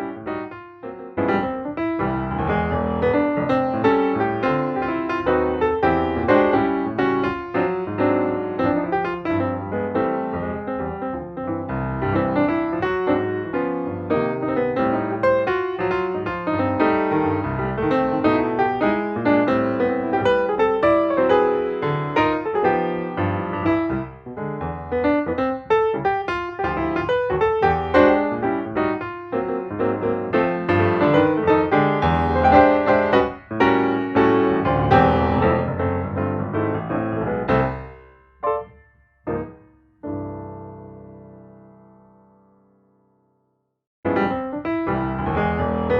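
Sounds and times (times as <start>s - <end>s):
piano music: 0.0s - 43.4s, 44.0s - 45.9s.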